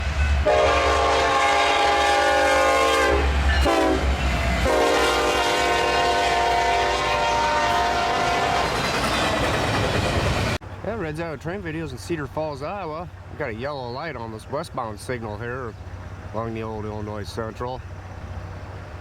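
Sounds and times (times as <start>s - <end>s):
low rumble of train: 0.0s - 19.0s
locomotive air horn blasts: 0.4s - 8.8s.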